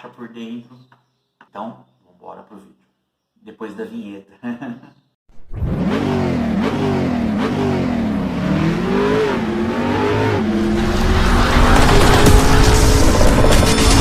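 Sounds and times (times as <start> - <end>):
car engine revving: 5.5 - 14.0.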